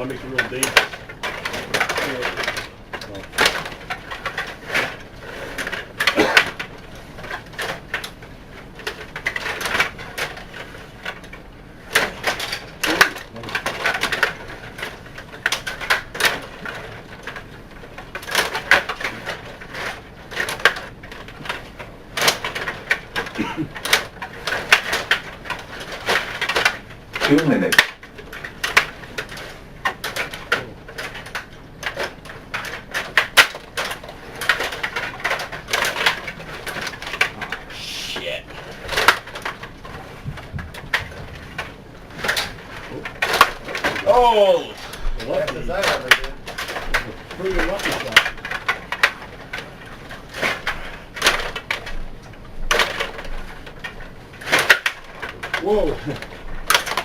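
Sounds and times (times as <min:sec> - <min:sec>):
table hockey rods sliding: 0:00.0 - 0:08.2
table hockey clacks and rattles: 0:00.0 - 0:57.0.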